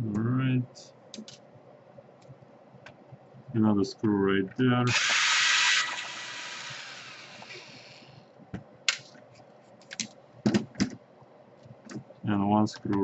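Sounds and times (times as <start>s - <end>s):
cordless drill motor: 4.9s - 8.2s.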